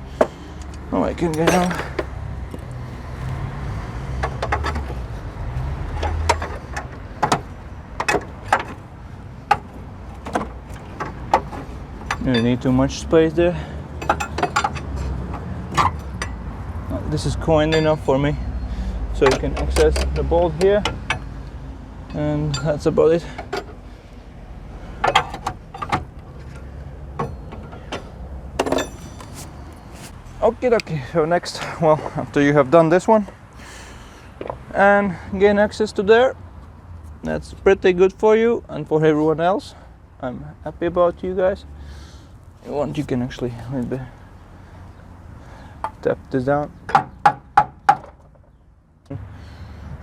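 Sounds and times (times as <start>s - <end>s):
metal tools clicking and knocking: 0.2s - 2.2s, 4.2s - 5.0s, 5.9s - 8.8s, 9.5s - 12.7s, 14.0s - 16.4s, 19.2s - 21.4s, 22.1s - 23.8s, 25.0s - 29.5s.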